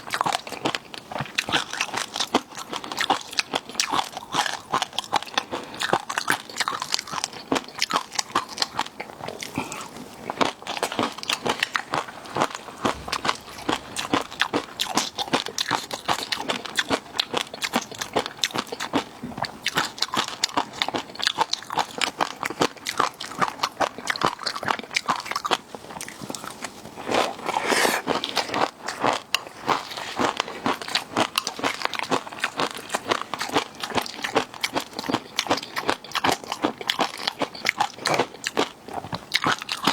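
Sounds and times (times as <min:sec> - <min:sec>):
crunching and chewing: 0:00.0 - 0:39.9
wet mouth clicks: 0:12.8 - 0:15.2.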